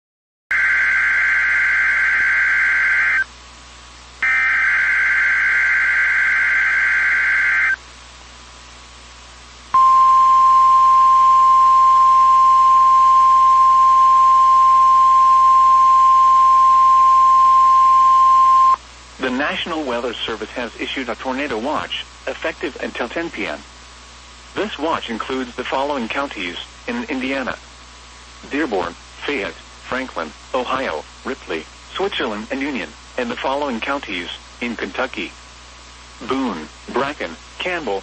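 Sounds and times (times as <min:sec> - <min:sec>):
digital header data bursts: 0:04.2 - 0:07.8
steady single-pitched attention tone: 0:09.8 - 0:18.8.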